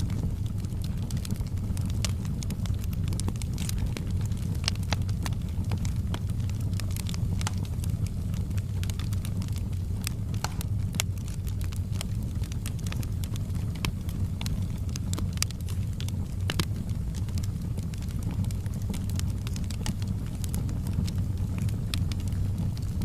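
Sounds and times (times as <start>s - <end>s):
fire crackling and popping: 0.0s - 23.0s
low rumble of flames: 0.0s - 23.0s.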